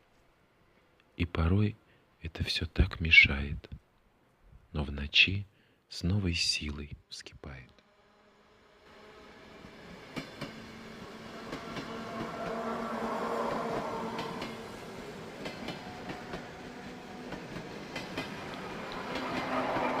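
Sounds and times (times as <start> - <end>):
train rumbling on rails: 8.8 - 20.0
wheels clacking over rail joints: 15.3 - 20.0.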